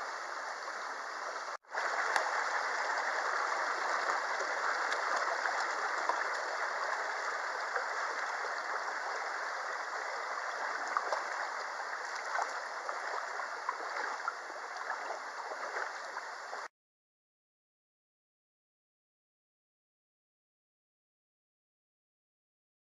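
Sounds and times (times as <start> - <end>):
stream water rushing: 0.0 - 16.7.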